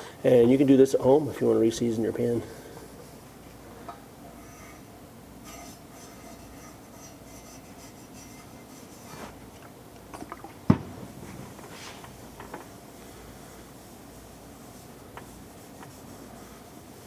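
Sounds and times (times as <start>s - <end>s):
hand rubbing oil on pan: 4.3s - 9.4s, 13.0s - 17.0s
sharp knock: 10.7s - 11.2s.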